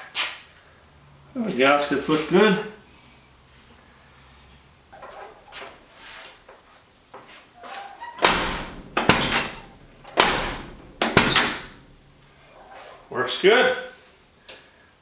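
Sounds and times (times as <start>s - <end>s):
door handle and latch rattling: 8.1s - 12.3s
car door clunking: 8.2s - 12.3s.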